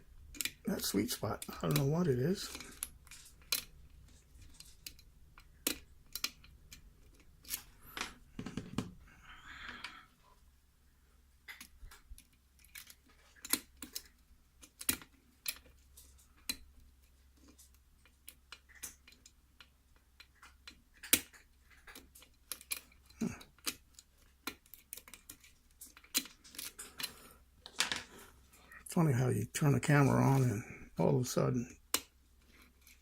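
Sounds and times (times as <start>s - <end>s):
lock pick clicking on pins: 4.6s - 7.7s, 20.2s - 27.2s.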